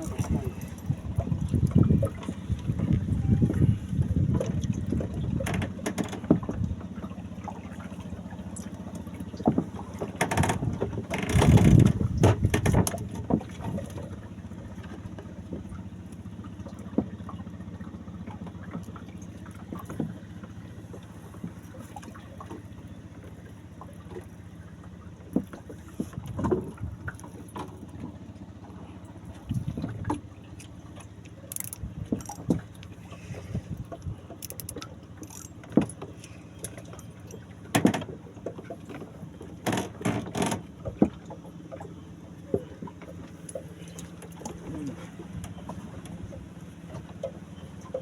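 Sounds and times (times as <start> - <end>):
boat engine humming: 0.0 - 48.0
knocks and clatter on board: 4.3 - 7.1, 9.3 - 15.8, 19.6 - 20.2, 25.3 - 28.2, 31.5 - 32.8, 34.3 - 36.2, 37.6 - 41.4.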